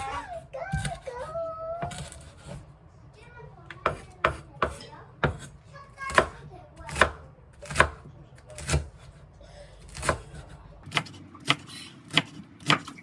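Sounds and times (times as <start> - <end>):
knife chopping on cutting board: 1.8 - 2.6, 3.8 - 9.2, 9.9 - 13.0.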